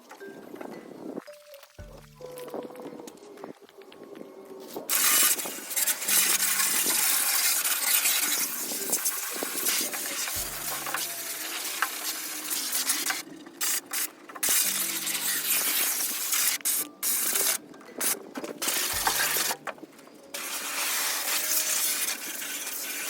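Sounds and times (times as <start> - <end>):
water spraying hissing: 4.9 - 19.6, 20.4 - 23.0.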